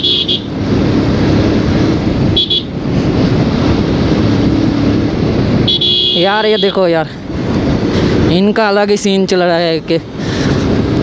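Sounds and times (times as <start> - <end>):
vehicle horn honking: 0.0 - 0.5, 2.3 - 2.7, 5.6 - 6.8
motorcycle engine hum: 0.0 - 11.0
wind and road noise: 0.0 - 11.0.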